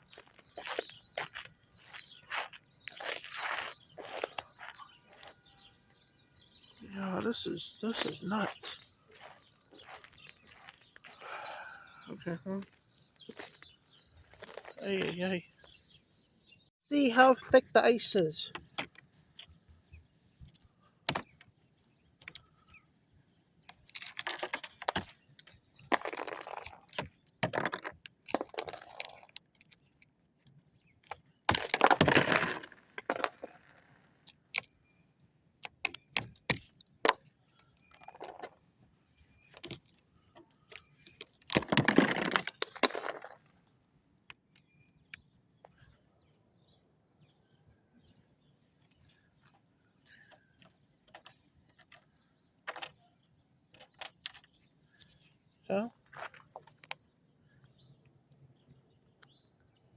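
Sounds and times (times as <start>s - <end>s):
ice crunching: 0.0s - 5.4s, 7.9s - 15.3s, 23.8s - 29.6s, 31.5s - 34.0s, 41.2s - 43.5s
ice cracking and clinking: 23.9s - 29.8s, 31.5s - 34.7s, 41.2s - 43.5s.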